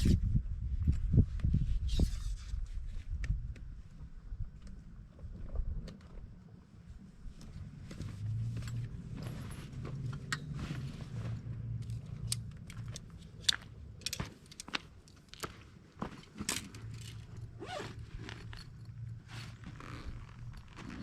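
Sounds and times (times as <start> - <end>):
clicks of tent poles: 9.7 - 11.1, 11.7 - 18.8
tent fabric scraping: 17.6 - 18.6, 19.2 - 21.0
zipper rasps: 17.6 - 18.6, 19.2 - 21.0.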